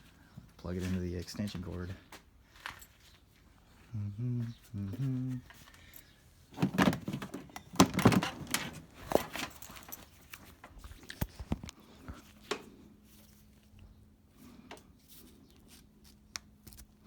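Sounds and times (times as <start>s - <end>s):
plug clicks and rattles: 6.6s - 9.9s.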